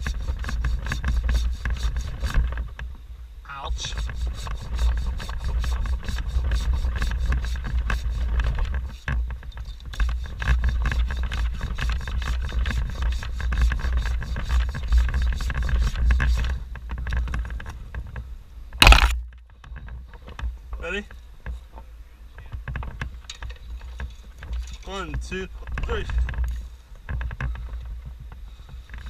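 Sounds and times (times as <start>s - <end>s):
hand saw cutting wood: 0.0s - 2.6s, 3.7s - 16.6s.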